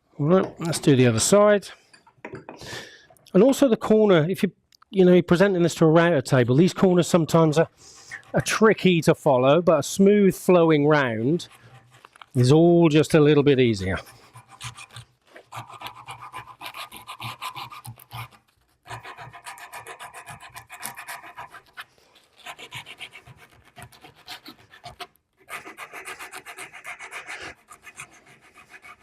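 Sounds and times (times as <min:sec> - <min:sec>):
sandpaper rubbing on wood: 0:14.0 - 0:29.0.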